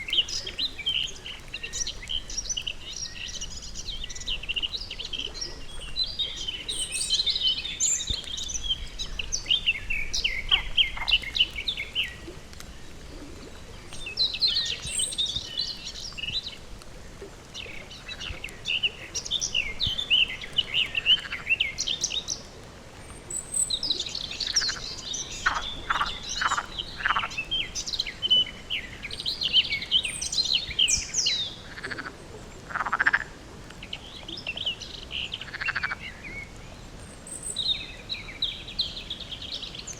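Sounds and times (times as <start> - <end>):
frogs croaking: 10.3 - 11.4, 24.4 - 27.8, 31.5 - 33.7, 35.2 - 36.2.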